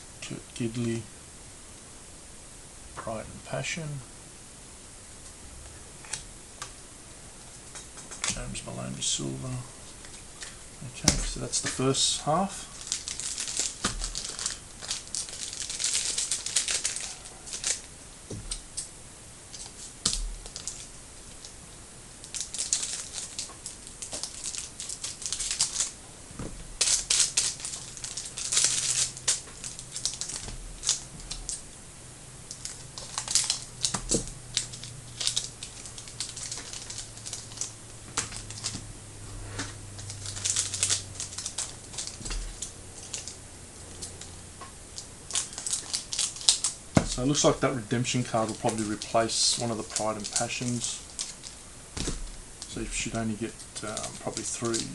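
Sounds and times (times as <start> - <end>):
pack wrappers crinkling: 9.4 - 18.9, 19.5 - 21.6, 22.2 - 26.0, 26.6 - 31.7, 32.4 - 38.9, 39.9 - 54.9
cards clicking being shuffled: 26.8 - 31.6, 32.5 - 38.8, 48.2 - 54.9.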